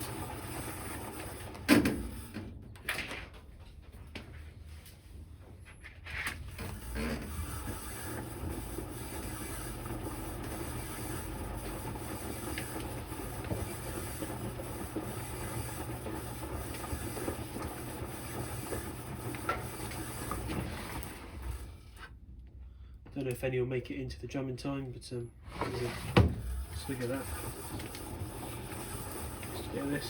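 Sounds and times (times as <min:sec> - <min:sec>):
washing machine rinsing: 0:00.0 - 0:02.3, 0:06.6 - 0:21.8, 0:25.7 - 0:30.0.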